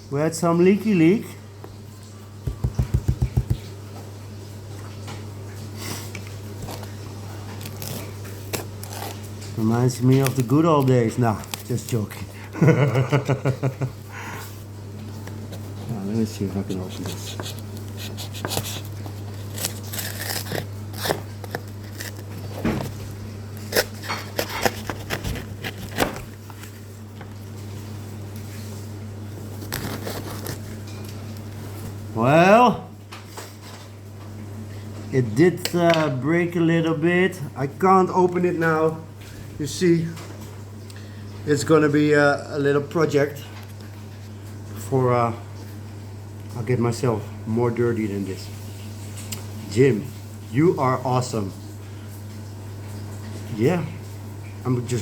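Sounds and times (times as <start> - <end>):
container clicks and scrapes: 23.6 - 26.6.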